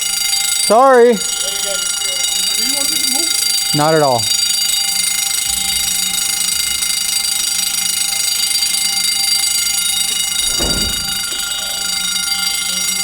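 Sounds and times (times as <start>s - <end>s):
fire alarm tone: 0.0s - 13.0s
low thump: 10.4s - 12.2s.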